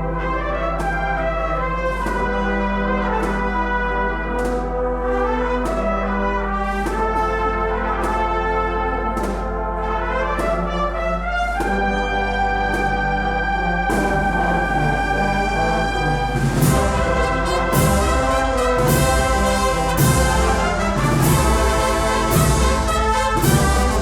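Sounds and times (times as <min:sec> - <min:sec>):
brass band playing a march: 0:00.0 - 0:24.0
sharp percussion hits: 0:13.9 - 0:24.0.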